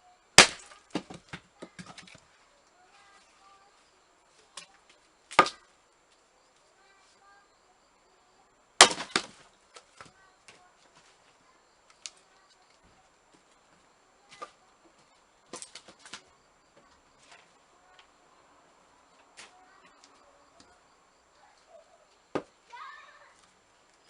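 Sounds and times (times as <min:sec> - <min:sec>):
axe chopping firewood: 0:00.4 - 0:02.2, 0:05.3 - 0:05.6, 0:08.8 - 0:10.1, 0:22.3 - 0:22.6.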